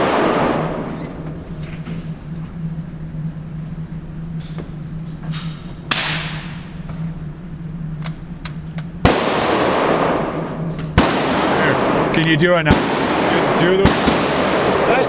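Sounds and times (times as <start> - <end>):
low hum: 0.0 - 15.0
handgun shots echoing: 5.9 - 6.6, 9.1 - 15.0.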